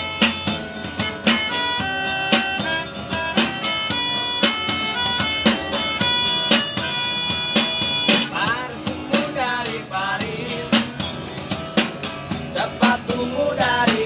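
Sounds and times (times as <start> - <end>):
held reedy tone: 0.0 - 9.6
music with drum beat: 0.0 - 14.0
person singing in wavering voice: 12.4 - 14.0.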